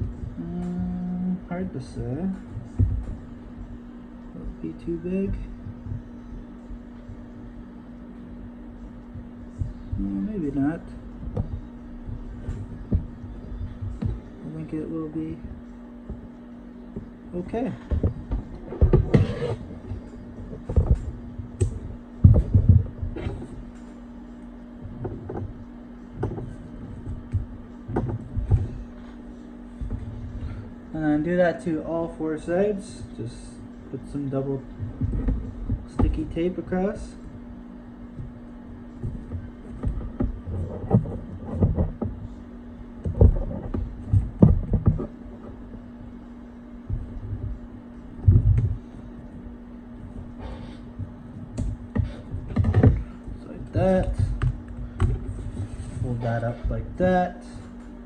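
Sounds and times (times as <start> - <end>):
steady low hum: 0.0 - 58.0
handling knocks taps and rubbing: 15.4 - 30.6, 34.6 - 37.4, 38.0 - 57.0.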